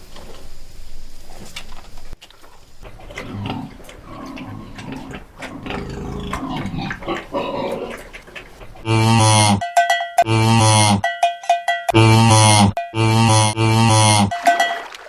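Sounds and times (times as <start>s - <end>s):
rough animal sound: 2.2s - 9.6s
cow mooing: 2.8s - 9.6s
cowbell ringing: 9.6s - 12.0s, 14.3s - 15.0s.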